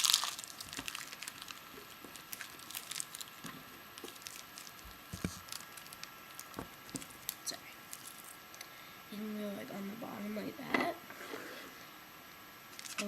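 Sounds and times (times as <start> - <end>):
plastic toys and packaging handled: 0.0 - 8.4, 12.7 - 13.0.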